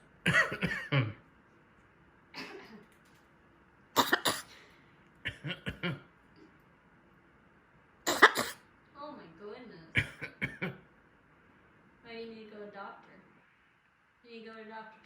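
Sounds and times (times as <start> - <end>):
parrot mimicking a cough: 0.3 - 0.9, 4.0 - 4.5, 5.3 - 5.9, 8.1 - 8.6.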